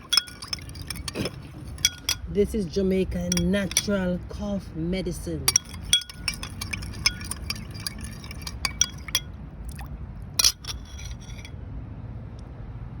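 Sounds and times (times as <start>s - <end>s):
glassware clinking: 0.0s - 2.3s, 3.2s - 4.0s, 5.5s - 11.5s.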